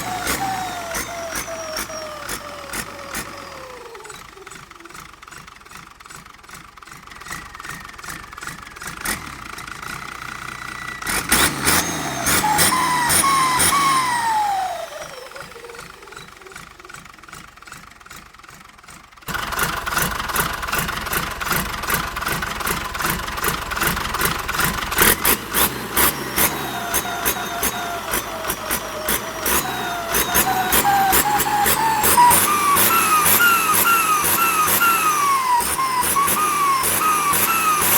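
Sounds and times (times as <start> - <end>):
diesel engine revving: 0.0 - 6.2, 7.2 - 37.9
rapid engine ticking: 0.0 - 37.9
turbo whistling: 7.0 - 9.5, 10.4 - 16.6, 23.0 - 37.9.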